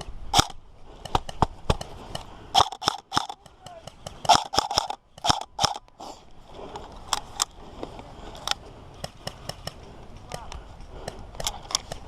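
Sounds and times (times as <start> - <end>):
rustling hiss: 0.0 - 12.0
airsoft gun shots: 2.6 - 5.8.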